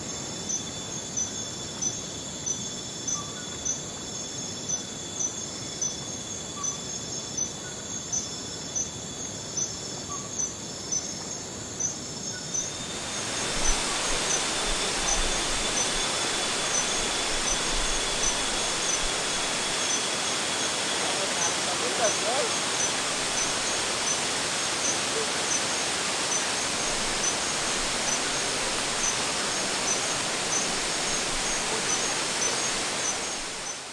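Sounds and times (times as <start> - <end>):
insects humming and chirping: 0.0 - 33.9
waterfall rushing: 12.7 - 33.9.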